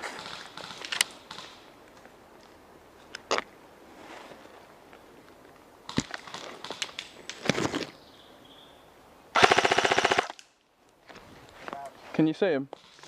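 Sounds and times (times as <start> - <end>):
leaves and twigs crackling underfoot: 0.0 - 8.1
airsoft gun full-auto burst: 9.4 - 10.3.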